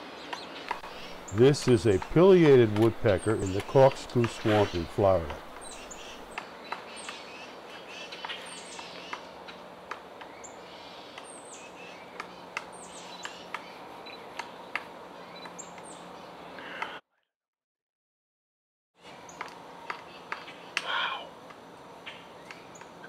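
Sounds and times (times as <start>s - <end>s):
woodpecker pecking at wood: 0.7s - 7.2s, 12.1s - 13.7s.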